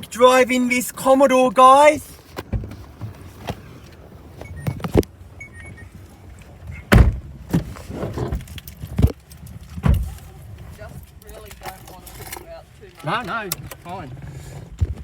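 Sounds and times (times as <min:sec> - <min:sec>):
car door knocks and thumps: 0:02.4 - 0:03.6, 0:06.7 - 0:08.4, 0:09.8 - 0:10.1.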